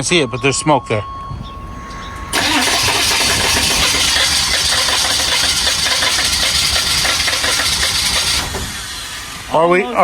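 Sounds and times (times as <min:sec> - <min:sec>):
diesel engine starter cranking: 0:02.3 - 0:09.6.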